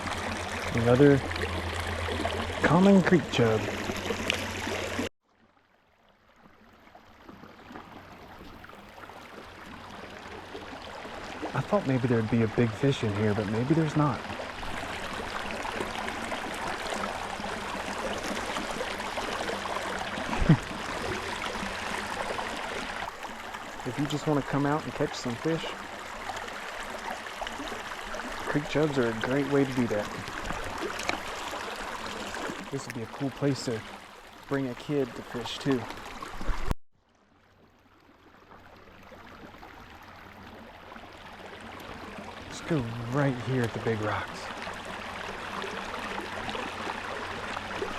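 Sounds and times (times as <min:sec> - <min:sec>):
creek water trickling over rocks: 0:00.0 - 0:47.9.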